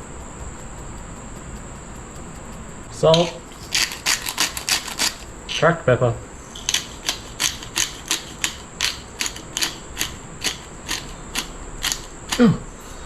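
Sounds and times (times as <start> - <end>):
pepper grinder clicking: 3.0 - 5.3, 6.6 - 12.6.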